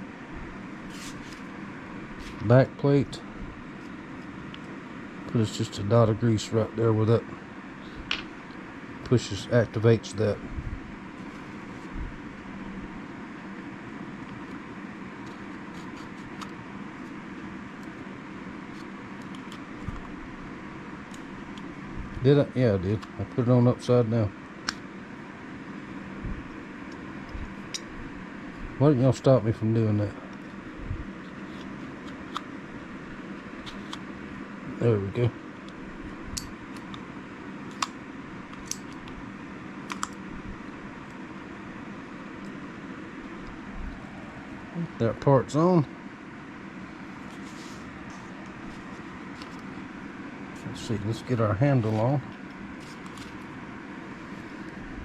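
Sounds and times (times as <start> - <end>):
background hum: 0.0 - 55.0.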